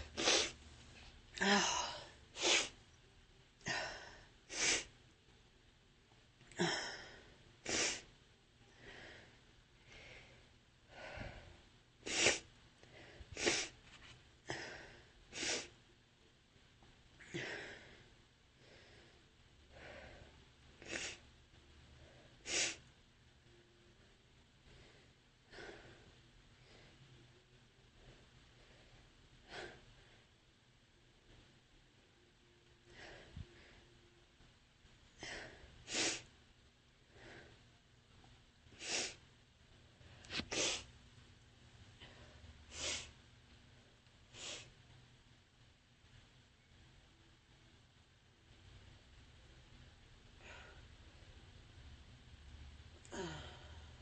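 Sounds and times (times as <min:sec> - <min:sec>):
breaths: 0:08.7 - 0:11.7, 0:17.3 - 0:20.4, 0:32.8 - 0:34.0, 0:42.0 - 0:43.1, 0:50.4 - 0:50.9, 0:53.1 - 0:54.0.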